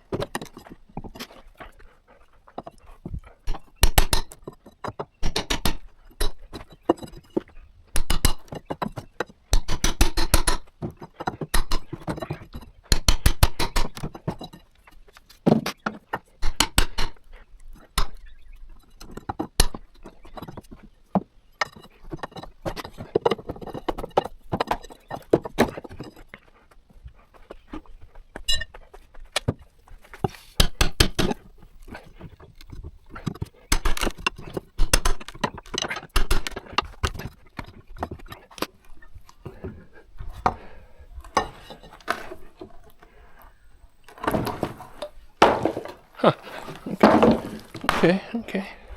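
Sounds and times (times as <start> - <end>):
hand tool clicking and knocking: 3.4 - 14.7, 15.5 - 18.3, 30.2 - 31.5, 32.2 - 38.7.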